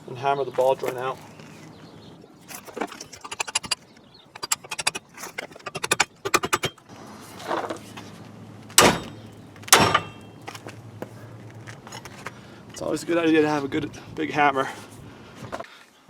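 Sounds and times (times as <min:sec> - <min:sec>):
hammer striking metal: 0:04.4 - 0:06.7, 0:08.8 - 0:10.2
heavy ringing hammer blows: 0:08.8 - 0:09.2.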